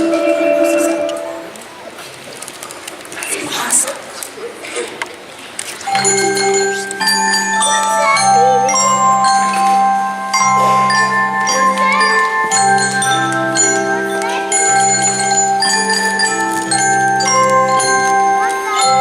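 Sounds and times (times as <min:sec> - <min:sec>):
bell-like mallet percussion melody: 0:00.0 - 0:01.6, 0:05.9 - 0:19.0.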